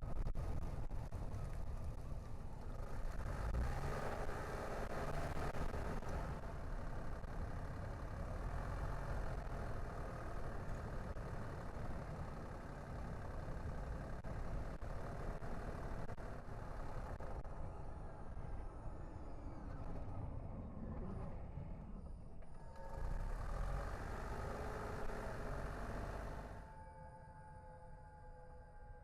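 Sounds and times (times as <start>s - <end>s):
car engine running: 0.0s - 17.6s, 22.7s - 26.6s.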